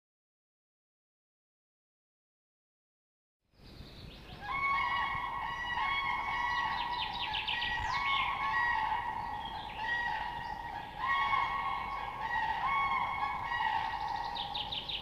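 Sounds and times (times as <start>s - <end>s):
geese honking: 4.4s - 14.7s.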